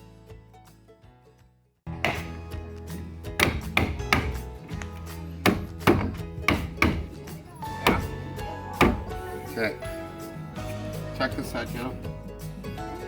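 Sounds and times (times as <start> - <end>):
background music: 0.0 - 13.0
sharp knocks: 2.0 - 2.4, 3.4 - 8.2, 8.8 - 9.2.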